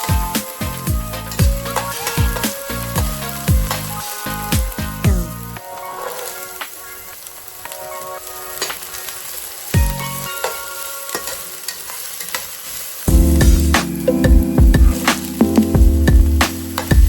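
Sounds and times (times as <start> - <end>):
rice sizzling in a pan: 0.0 - 17.0.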